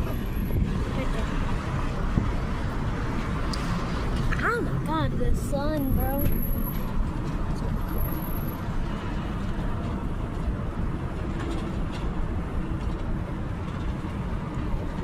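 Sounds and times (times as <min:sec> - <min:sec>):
car road and engine rumble: 0:00.0 - 0:15.0.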